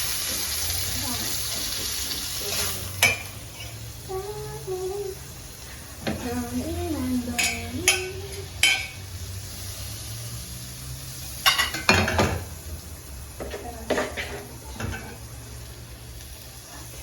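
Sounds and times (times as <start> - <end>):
metal spoon clinking on dishes: 7.3 - 9.1, 11.4 - 12.4.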